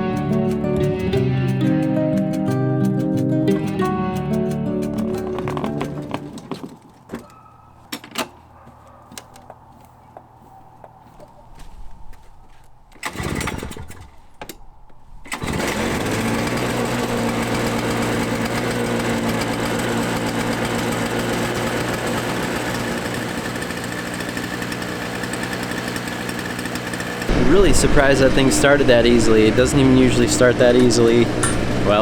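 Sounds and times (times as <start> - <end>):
small gasoline engine running: 13.0 - 14.0, 15.3 - 32.0
starter cord pull: 13.0 - 14.6.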